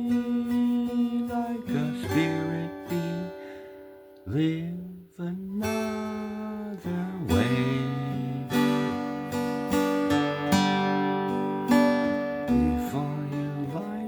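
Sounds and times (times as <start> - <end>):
guitar chords strummed: 0.0 - 14.0.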